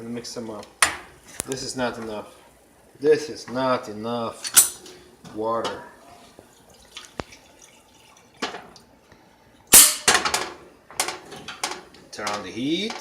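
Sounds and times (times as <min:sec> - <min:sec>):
metal pots and utensils clanking: 0:04.4 - 0:05.0, 0:08.4 - 0:08.7, 0:09.7 - 0:13.0.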